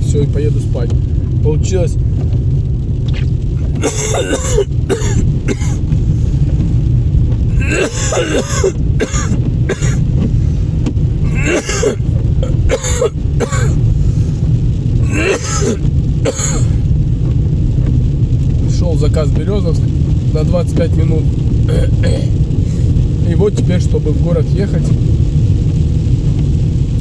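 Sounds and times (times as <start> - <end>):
car engine and road rumble: 0.0 - 27.0
man coughing: 3.8 - 5.8, 7.6 - 10.1, 11.3 - 13.8, 15.0 - 16.8, 21.7 - 22.3
throat clearing: 3.8 - 5.8, 7.6 - 10.0, 11.3 - 13.8, 15.0 - 16.8.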